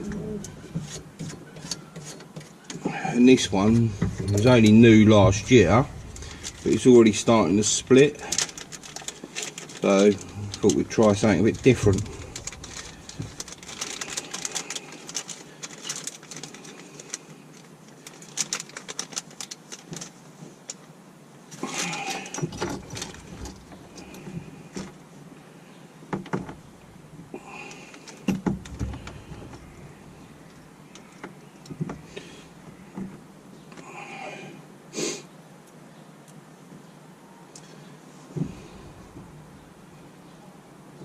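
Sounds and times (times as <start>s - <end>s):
bursts of rustling: 3.5s - 20.8s.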